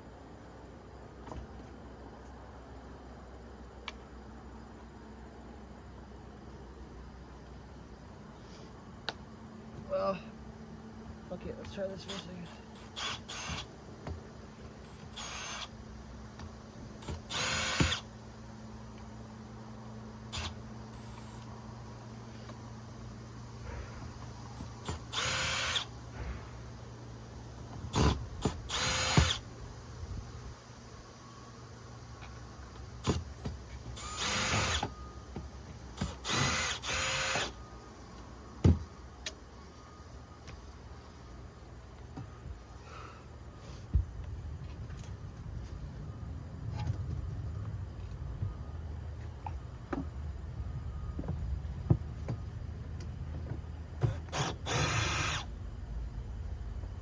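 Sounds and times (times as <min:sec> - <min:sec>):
cordless drill backing out screws: 0:12.0 - 0:13.7, 0:14.8 - 0:15.7, 0:17.0 - 0:18.1, 0:24.6 - 0:25.9, 0:27.9 - 0:29.4, 0:33.0 - 0:35.1, 0:35.9 - 0:37.6, 0:54.0 - 0:55.5.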